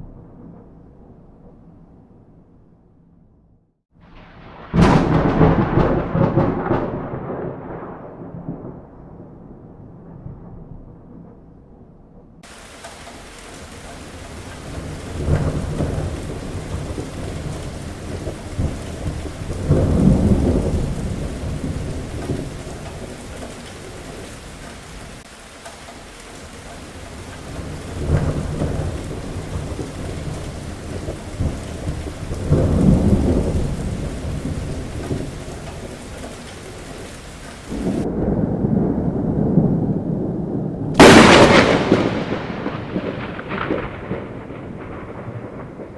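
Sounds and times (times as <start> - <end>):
deep rolls of thunder: 0.0 - 2.9, 4.0 - 45.9
heavy rain falling: 4.0 - 8.6, 12.4 - 45.9.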